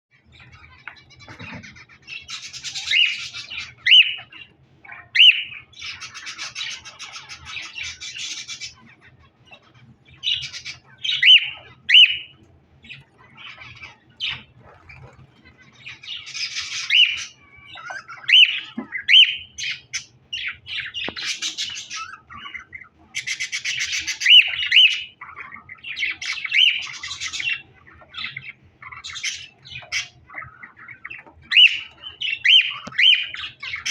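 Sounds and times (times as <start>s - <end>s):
cage birds chattering and squawking: 0.1s - 33.9s.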